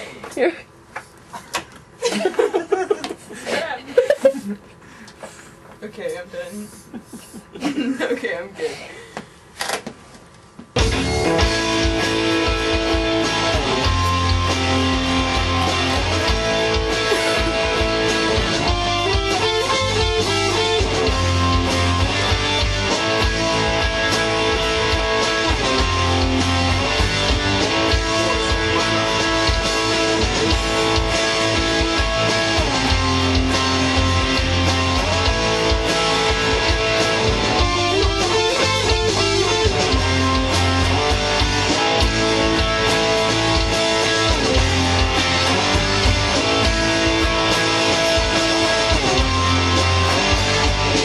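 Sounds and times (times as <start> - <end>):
rock music with electric guitar: 10.8 - 51.0.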